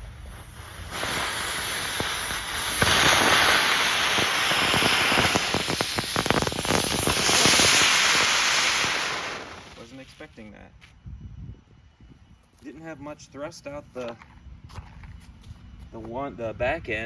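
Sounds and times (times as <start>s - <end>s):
firework hissing: 0.0s - 10.3s
firework crackles: 0.0s - 10.4s.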